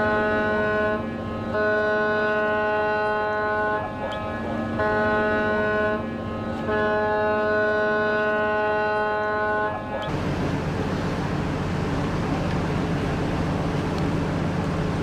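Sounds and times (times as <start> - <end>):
ship's horn chord: 0.0 - 12.2
low rumbling noise: 10.1 - 15.0.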